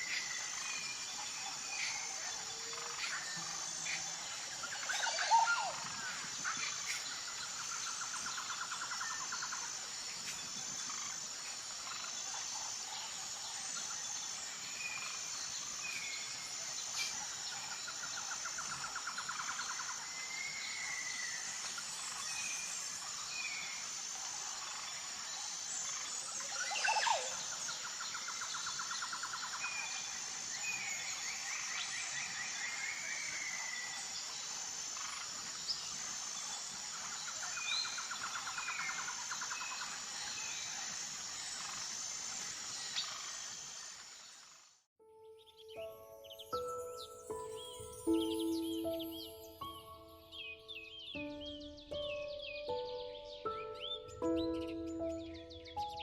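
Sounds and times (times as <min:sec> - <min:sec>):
birds chirping and whistling: 0:00.0 - 0:07.0, 0:45.5 - 0:56.0
high insect whine: 0:00.0 - 0:44.8, 0:45.7 - 0:56.0.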